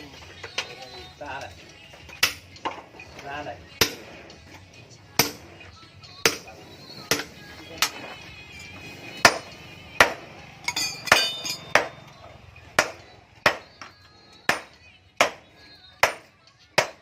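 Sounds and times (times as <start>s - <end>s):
hammer striking iron on anvil: 2.2s - 2.8s, 3.8s - 4.1s, 5.2s - 5.5s, 6.2s - 6.5s, 7.1s - 8.0s, 9.2s - 12.1s, 12.7s - 17.0s.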